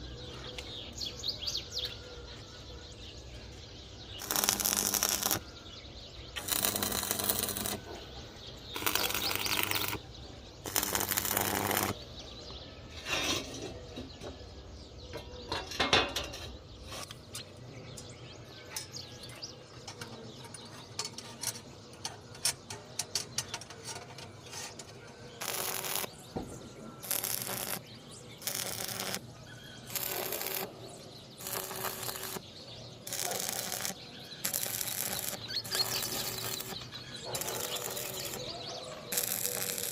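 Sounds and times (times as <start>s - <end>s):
arc welding bursts: 4.2s - 5.5s, 6.4s - 7.9s, 8.8s - 10.0s, 10.6s - 12.0s, 25.4s - 26.2s, 27.0s - 29.2s, 29.8s - 30.8s, 31.4s - 32.4s, 33.1s - 38.5s, 39.1s - 39.9s
welder hum: 4.2s - 5.5s, 6.4s - 8.0s, 8.7s - 10.0s, 10.6s - 12.0s, 25.4s - 26.2s, 27.0s - 29.2s, 29.8s - 30.8s, 31.4s - 32.4s, 33.0s - 39.9s.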